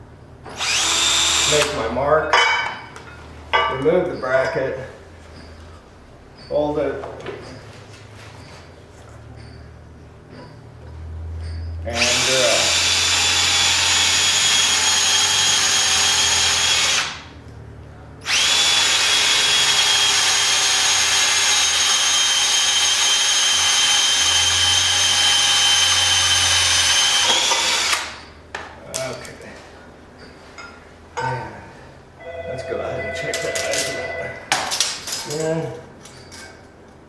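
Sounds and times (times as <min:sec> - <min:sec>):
power drill whining: 0:00.5 - 0:01.8, 0:11.9 - 0:17.3, 0:18.2 - 0:28.3.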